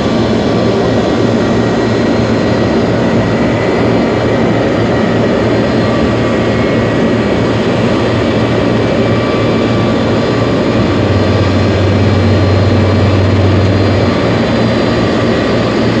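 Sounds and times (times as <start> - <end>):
jet engines running: 0.0 - 16.0.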